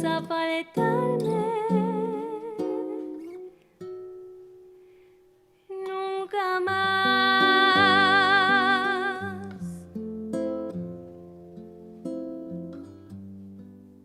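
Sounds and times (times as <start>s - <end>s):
person singing with vibrato: 0.0s - 3.5s, 5.7s - 9.9s
plucked guitar notes: 0.0s - 4.8s, 6.7s - 14.0s
acoustic guitar and bass song: 0.0s - 5.0s, 6.7s - 14.0s.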